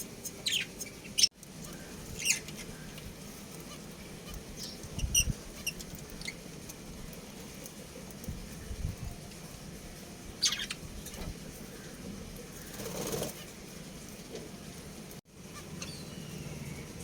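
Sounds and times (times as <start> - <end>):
wing flapping: 12.5 - 13.6.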